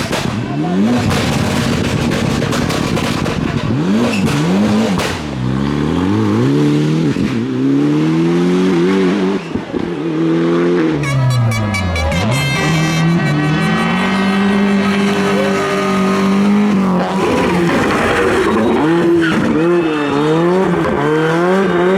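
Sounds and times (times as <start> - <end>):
engine crackles: 0.0 - 7.5, 10.8 - 21.9
car engine revving: 0.0 - 21.9
shrill high-pitched squeal: 11.0 - 19.8.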